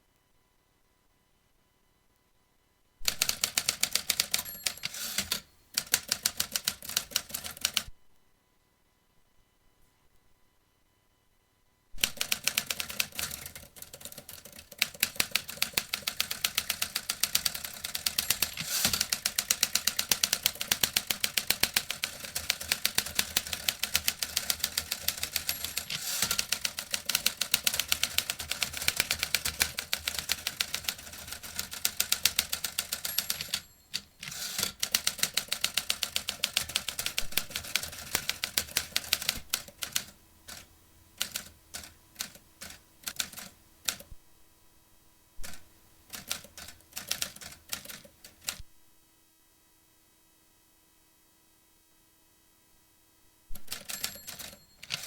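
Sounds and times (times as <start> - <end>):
manual typewriter typing: 3.0 - 7.9, 12.0 - 44.1, 45.4 - 48.6, 53.6 - 55.0.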